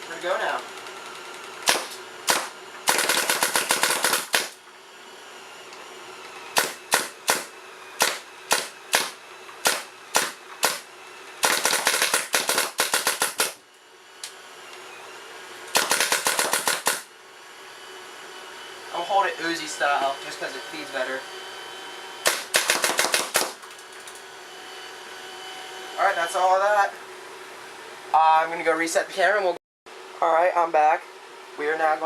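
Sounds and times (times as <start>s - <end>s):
paintball marker shots: 1.6s - 4.6s, 6.6s - 10.8s, 11.4s - 13.6s, 15.7s - 17.1s, 22.3s - 23.6s.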